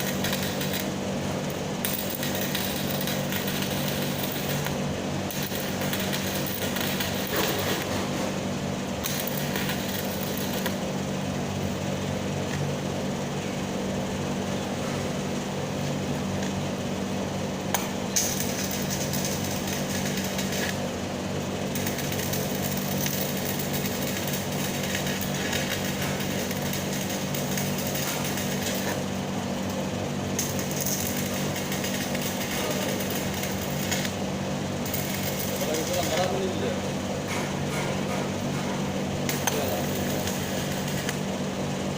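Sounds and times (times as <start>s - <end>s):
welding arc crackling: 0.0s - 8.0s, 8.8s - 11.6s, 17.7s - 36.6s, 39.2s - 41.4s.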